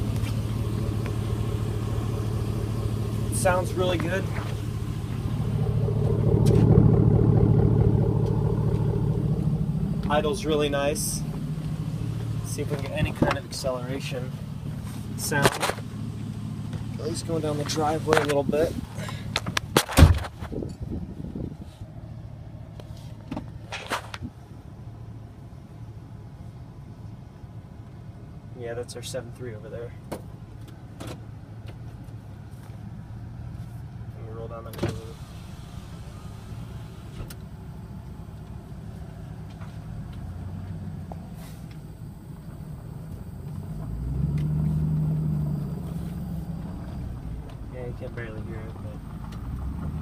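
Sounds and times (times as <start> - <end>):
engine idling: 0.0 - 19.8, 24.4 - 50.0
loud thump: 19.7 - 20.6.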